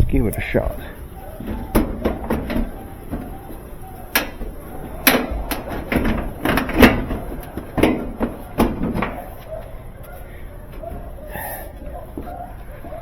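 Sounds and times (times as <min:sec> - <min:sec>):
sharp ringing knocks and clunks: 0:01.0 - 0:09.4.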